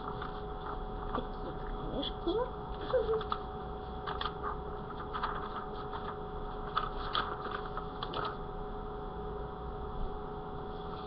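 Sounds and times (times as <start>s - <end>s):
paper handling clicks and rustles: 0.0s - 1.6s, 2.8s - 8.5s
electrical whine and hum: 0.0s - 11.0s.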